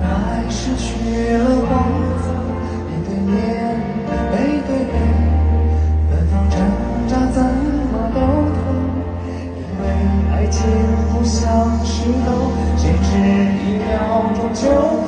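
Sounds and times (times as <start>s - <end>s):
pop music with singing: 0.0s - 15.0s.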